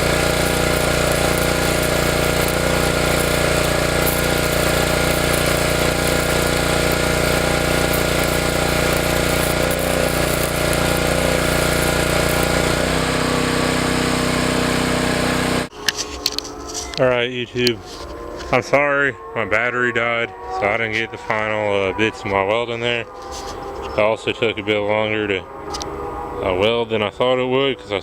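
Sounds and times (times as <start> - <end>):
welding arc buzzing: 0.0 - 15.7.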